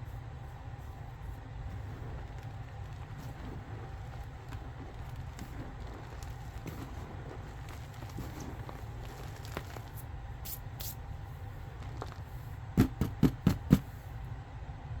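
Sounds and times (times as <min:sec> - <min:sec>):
chalk crackling: 0:00.8 - 0:14.0
dull thumps: 0:01.7 - 0:10.1, 0:11.7 - 0:14.0.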